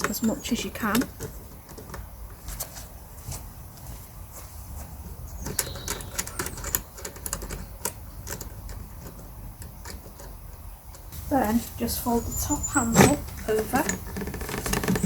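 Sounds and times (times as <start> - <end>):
plastic clicks and rattles: 0.0 - 2.1, 5.4 - 11.1.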